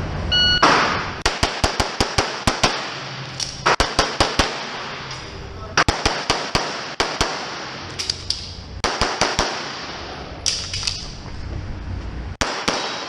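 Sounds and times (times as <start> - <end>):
rapid pistol shots: 0.6 - 5.1, 5.8 - 8.2, 8.8 - 10.8, 12.4 - 13.0.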